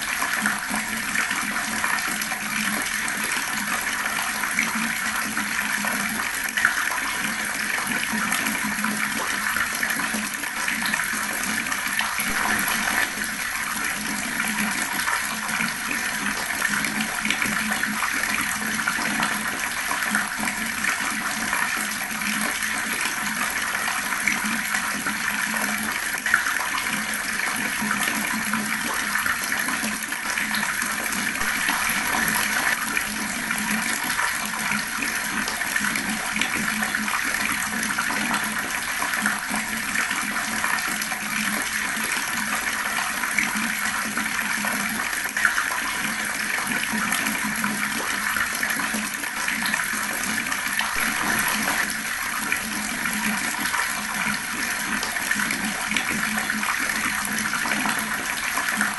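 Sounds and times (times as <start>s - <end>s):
fast-flowing water rushing: 9.6s - 25.2s, 29.8s - 41.2s, 44.8s - 58.9s.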